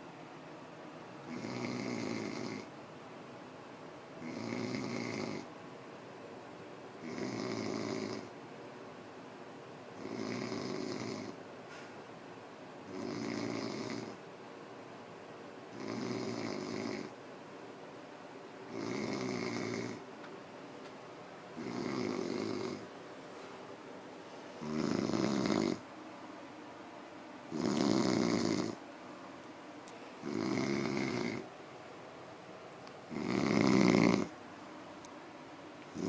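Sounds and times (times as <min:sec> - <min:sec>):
man snoring: 0:01.2 - 0:02.7, 0:04.2 - 0:05.5, 0:07.0 - 0:08.3, 0:10.0 - 0:11.4, 0:12.9 - 0:14.2, 0:15.7 - 0:17.2, 0:18.7 - 0:20.0, 0:21.6 - 0:22.8, 0:24.6 - 0:25.8, 0:27.5 - 0:28.8, 0:30.2 - 0:31.5, 0:33.1 - 0:34.4.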